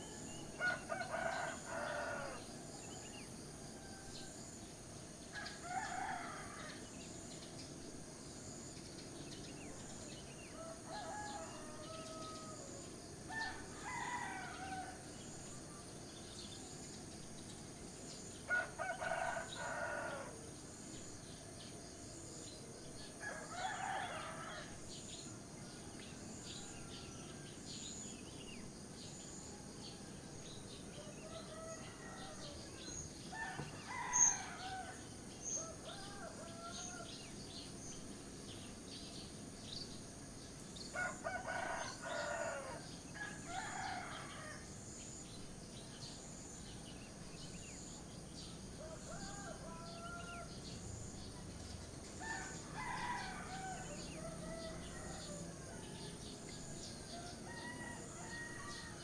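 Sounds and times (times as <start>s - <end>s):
roosters crowing: 33.3s - 37.1s, 41.0s - 44.6s, 48.8s - 50.5s, 52.2s - 59.0s.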